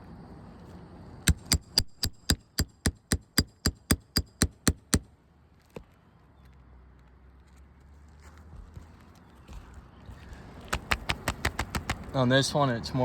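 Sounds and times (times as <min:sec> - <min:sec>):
hammer tapping metal: 0:01.3 - 0:05.1.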